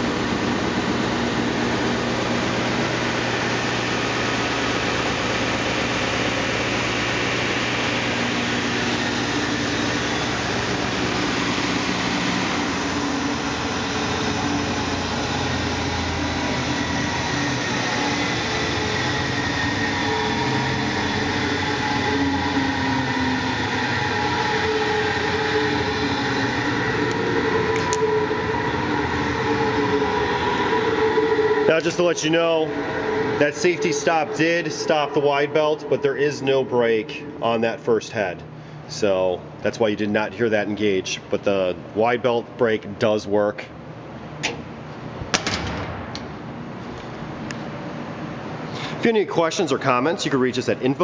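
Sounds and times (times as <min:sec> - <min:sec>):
planer sander running: 0:00.0 - 0:37.8.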